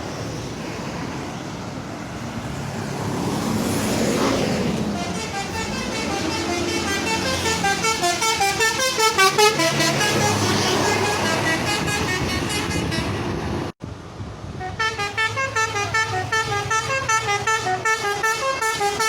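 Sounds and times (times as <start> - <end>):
vehicle passing: 0.0 - 18.2
musical bus horn playing a tune: 4.8 - 13.5, 14.6 - 19.0.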